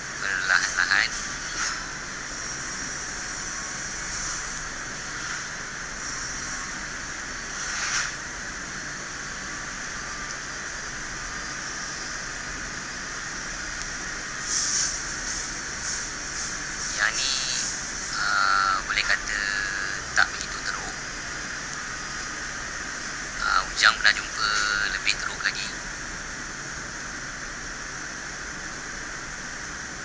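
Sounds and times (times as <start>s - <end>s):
steady hiss: 0.0s - 30.0s.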